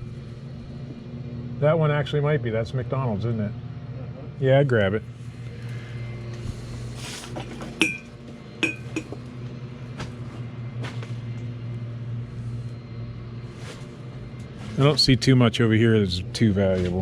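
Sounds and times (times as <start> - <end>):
steady low hum: 0.0 - 17.0
hard objects clinking: 7.7 - 9.2.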